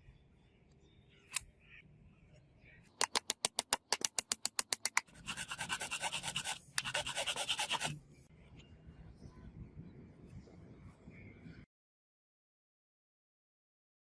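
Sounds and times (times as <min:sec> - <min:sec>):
fast scraping strokes: 0:05.1 - 0:08.0.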